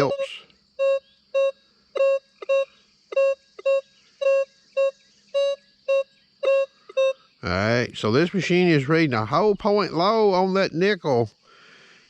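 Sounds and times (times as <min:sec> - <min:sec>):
metal detector short beeps: 0:00.0 - 0:07.2.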